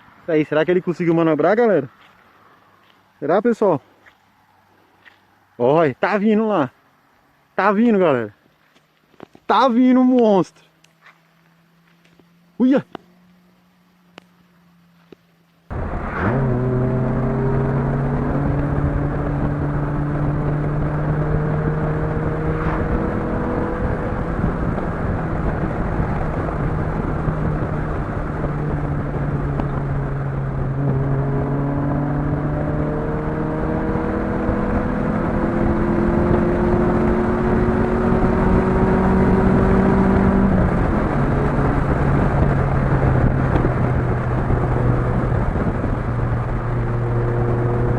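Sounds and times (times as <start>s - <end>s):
road and wind noise: 0.0s - 47.9s
car engine revving: 15.7s - 47.9s.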